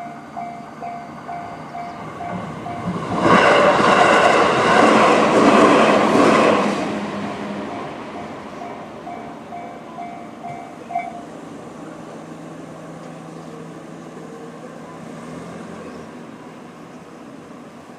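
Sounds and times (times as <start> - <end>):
level crossing alarm bell: 0.0 - 3.1, 7.8 - 11.2
electric train rumble: 0.0 - 17.9.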